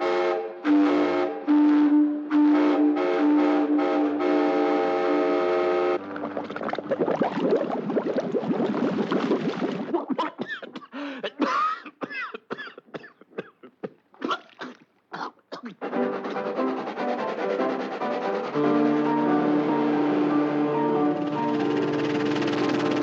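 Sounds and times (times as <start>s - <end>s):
steam train whistle: 0.0s - 6.0s, 15.8s - 23.0s.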